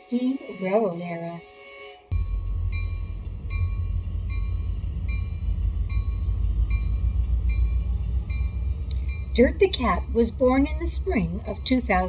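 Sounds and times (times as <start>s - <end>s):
train rumbling: 2.1s - 12.0s
locomotive bell ringing: 2.2s - 12.0s.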